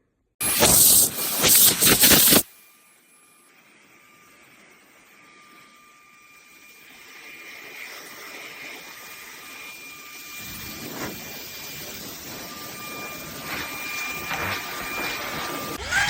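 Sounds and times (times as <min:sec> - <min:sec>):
rushing air: 0:00.4 - 0:02.4
vacuum motor whining: 0:00.4 - 0:16.0.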